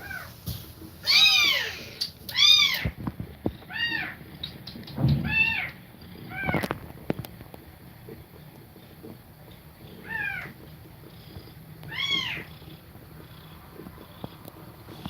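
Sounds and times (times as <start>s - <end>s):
kittens mewing: 1.0s - 3.0s, 5.3s - 6.8s, 9.9s - 10.6s, 11.8s - 15.0s.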